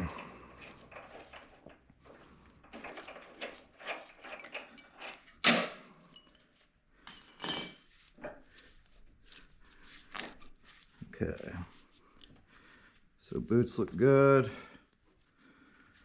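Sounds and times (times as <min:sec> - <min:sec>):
metal parts and tools clinking: 0:02.6 - 0:07.9
ringing metallic clatter: 0:03.8 - 0:05.3, 0:07.1 - 0:07.8.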